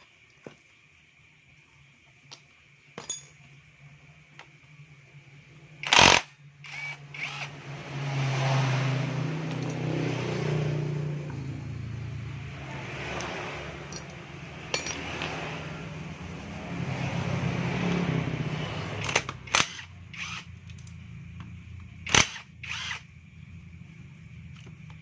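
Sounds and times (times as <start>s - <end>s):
metal tools clinking on engine parts: 3.0s - 3.6s, 13.2s - 15.5s.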